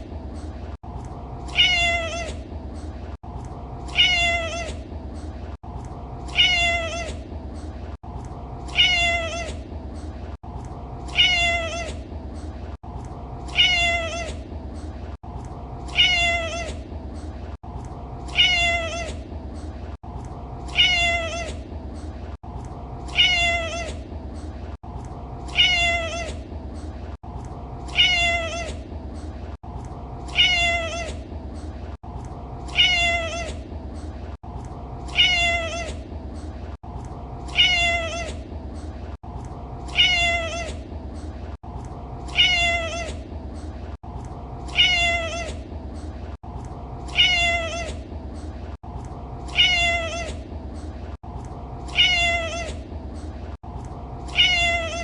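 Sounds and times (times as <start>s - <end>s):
cat meowing: 1.5s - 2.4s, 3.9s - 4.8s, 6.3s - 7.2s, 8.7s - 9.6s, 11.1s - 12.0s, 13.5s - 14.4s, 15.9s - 16.8s, 18.3s - 19.2s, 20.7s - 21.6s, 23.1s - 24.0s, 25.5s - 26.4s, 27.9s - 28.8s, 30.3s - 31.2s, 32.7s - 33.6s, 35.1s - 36.0s, 37.5s - 38.4s, 39.9s - 40.8s, 42.3s - 43.2s, 44.7s - 45.6s, 47.1s - 48.0s, 49.5s - 50.4s, 51.9s - 52.8s, 54.3s - 55.0s.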